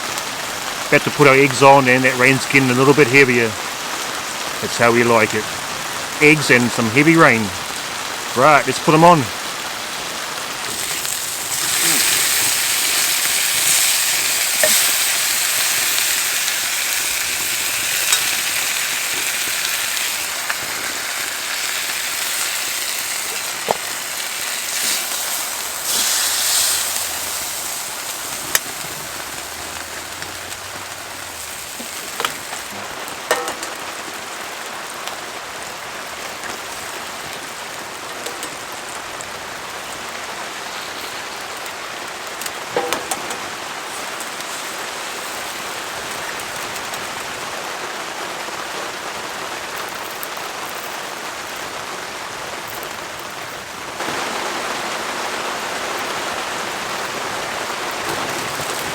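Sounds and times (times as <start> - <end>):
rain pattering on a tarp: 0.0 - 58.9.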